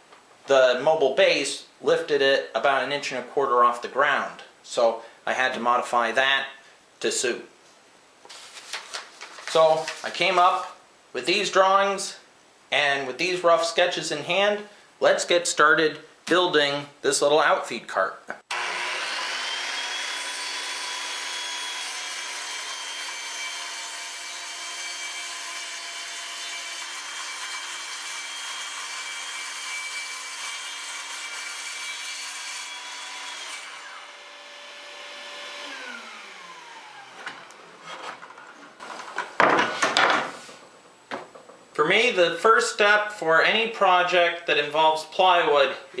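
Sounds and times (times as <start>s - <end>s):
circular saw cutting plywood: 18.5s - 37.6s
knocks of handled wood: 38.9s - 40.4s.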